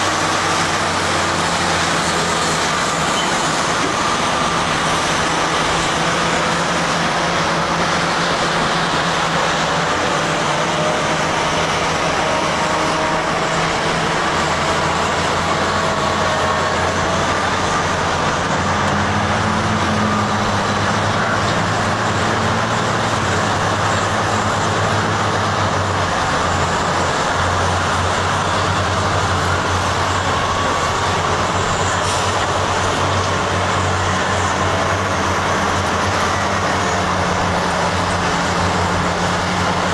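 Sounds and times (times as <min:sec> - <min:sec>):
heavy diesel engines under load: 0:00.0 - 0:39.9.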